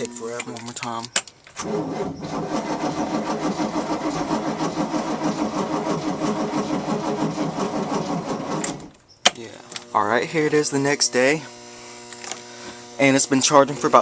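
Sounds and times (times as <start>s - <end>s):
boat engine cranking: 1.5s - 9.0s.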